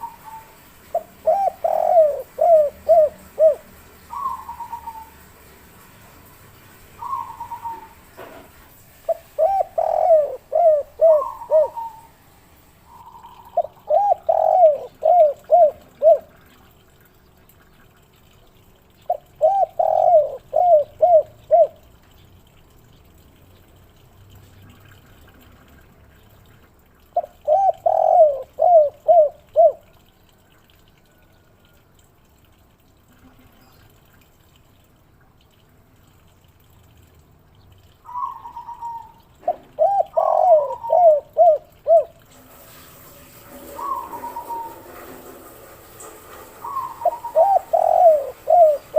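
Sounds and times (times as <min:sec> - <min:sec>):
dove cooing: 0:00.0 - 0:05.2, 0:07.0 - 0:08.1, 0:09.1 - 0:12.2, 0:12.9 - 0:16.5, 0:19.1 - 0:21.8, 0:27.2 - 0:29.8, 0:38.1 - 0:42.2, 0:43.6 - 0:45.3, 0:46.5 - 0:48.9.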